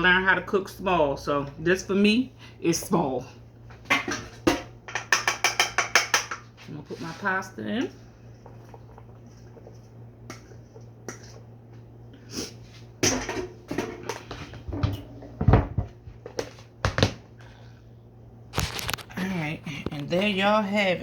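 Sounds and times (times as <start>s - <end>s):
food and utensil knocking bowl: 3.9s - 6.4s.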